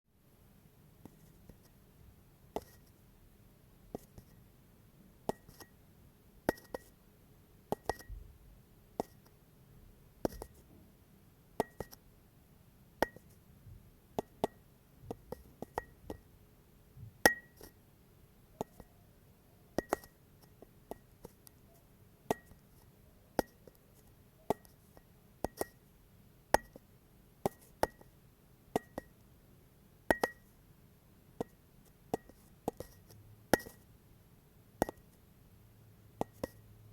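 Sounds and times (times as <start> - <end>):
faint low hum: 0.2 - 36.9.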